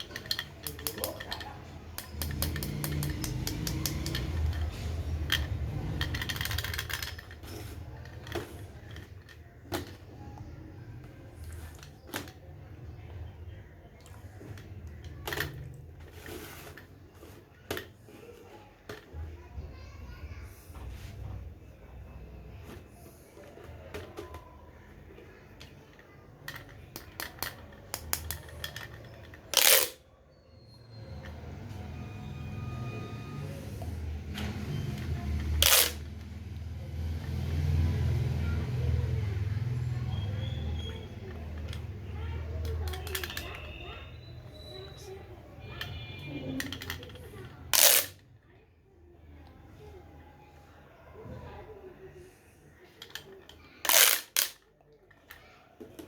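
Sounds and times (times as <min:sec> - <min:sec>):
plastic tubes clicking and crackling: 0:00.0 - 0:10.2, 0:25.5 - 0:30.0, 0:34.3 - 0:36.4, 0:39.6 - 0:48.2, 0:52.9 - 0:56.0.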